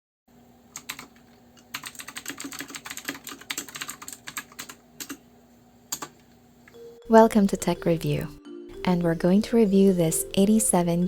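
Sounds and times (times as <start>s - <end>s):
clicky mechanical keyboard typing: 0.7s - 5.2s, 5.9s - 6.2s.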